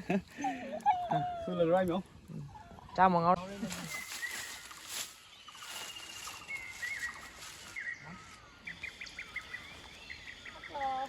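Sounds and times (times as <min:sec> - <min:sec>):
birds chirping: 0:00.0 - 0:11.0
high insect drone: 0:03.4 - 0:11.0.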